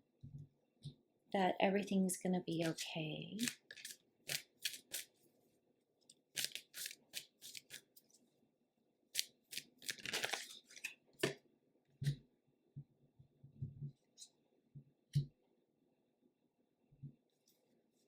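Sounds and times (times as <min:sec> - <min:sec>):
cards being shuffled: 0:03.4 - 0:05.1, 0:06.3 - 0:08.0, 0:09.2 - 0:11.3.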